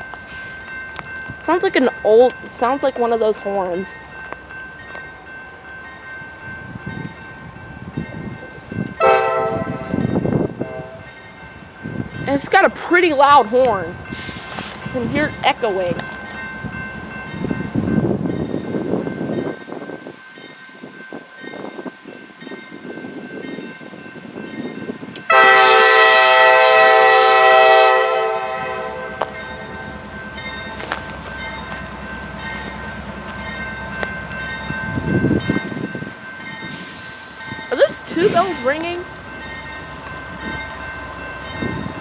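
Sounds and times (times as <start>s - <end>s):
bells ringing: 0.0s - 25.4s, 28.2s - 42.0s
locomotive air horn blast: 9.0s - 10.0s, 10.6s - 11.0s, 25.3s - 29.2s
locomotive rumble: 24.8s - 42.0s.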